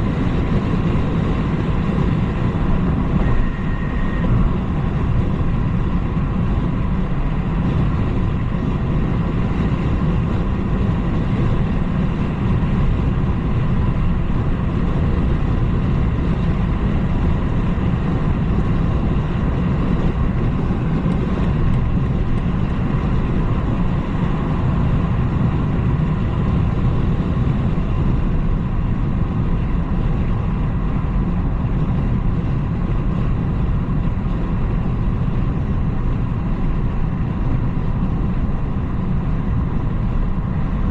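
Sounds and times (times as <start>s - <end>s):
car engine running: 0.0s - 40.9s
road and tyre noise: 0.0s - 40.9s.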